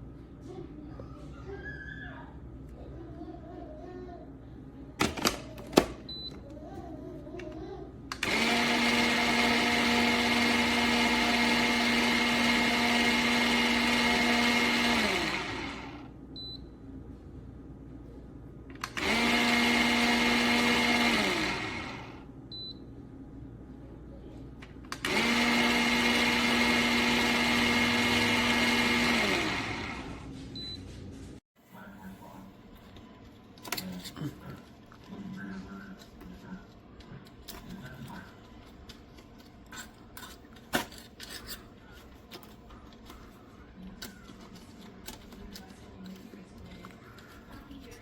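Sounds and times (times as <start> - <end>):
coffee grinder motor humming: 8.1 - 16.1, 18.8 - 22.2, 24.9 - 30.3.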